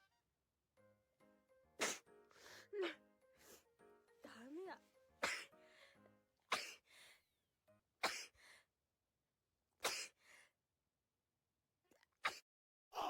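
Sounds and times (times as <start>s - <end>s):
woman sneezing: 1.8s - 2.0s, 9.8s - 10.2s.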